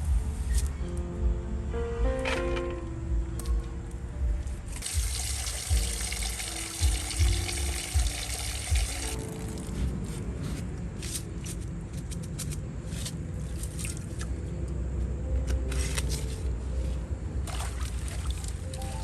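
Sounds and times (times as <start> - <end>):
water sloshing and trickling: 4.7 - 9.9, 13.0 - 14.5, 17.4 - 19.0
splashes: 13.4 - 14.4, 17.4 - 19.0.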